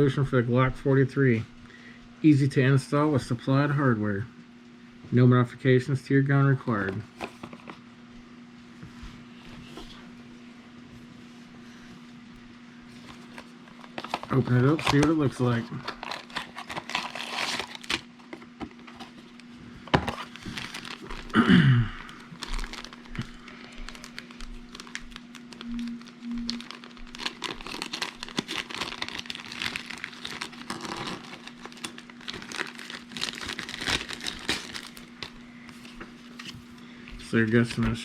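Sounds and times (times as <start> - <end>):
steady low hum: 0.0 - 38.0
wrapping crinkling: 12.9 - 21.4, 22.0 - 36.8.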